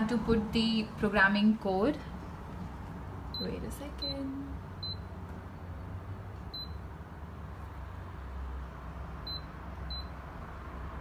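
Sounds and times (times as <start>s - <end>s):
keypad beeps: 4.8s - 5.1s, 6.5s - 6.8s, 9.2s - 10.2s.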